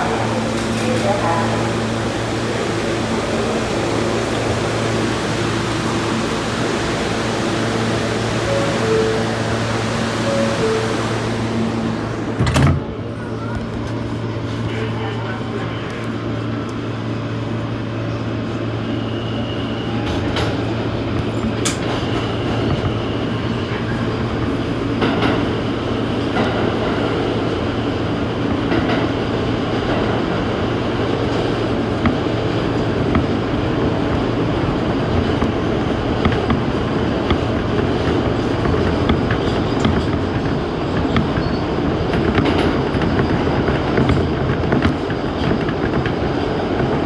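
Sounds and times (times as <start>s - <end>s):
low hum: 0.0s - 13.0s
subway train rumbling on track: 0.0s - 47.0s.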